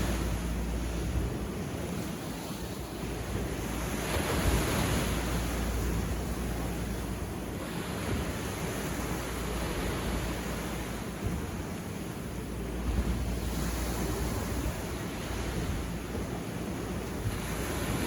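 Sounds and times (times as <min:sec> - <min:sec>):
sea surf washing onto beach: 0:00.0 - 0:18.0.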